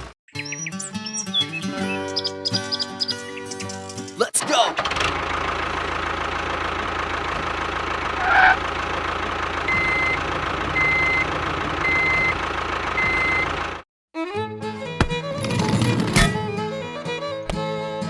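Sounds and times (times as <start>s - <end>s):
music: 0.0s - 4.2s, 14.2s - 18.0s
truck engine idling: 4.6s - 13.8s
reversing alarm beeps: 9.7s - 10.2s, 10.8s - 11.2s, 11.8s - 12.4s, 13.0s - 13.5s.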